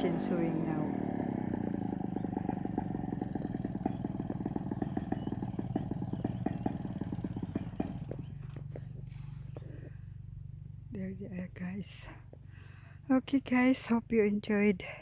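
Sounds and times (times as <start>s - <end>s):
chainsaw engine idling: 0.0s - 10.9s
low hum: 0.0s - 13.6s.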